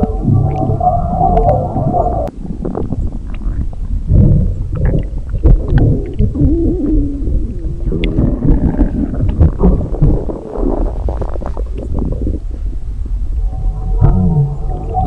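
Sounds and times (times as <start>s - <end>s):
wavering pitched squeal: 0.0s - 2.3s, 13.4s - 15.0s
stomach rumbling and gurgling: 0.0s - 15.0s.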